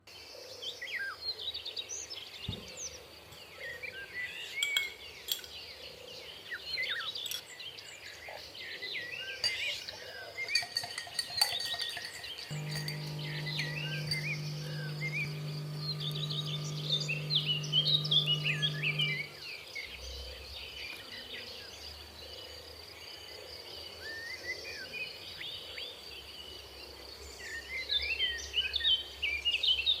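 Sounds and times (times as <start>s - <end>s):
glass and metal clinks: 4.6s - 5.6s, 7.2s - 7.6s, 9.4s - 14.2s
small electric motor humming: 12.2s - 19.5s.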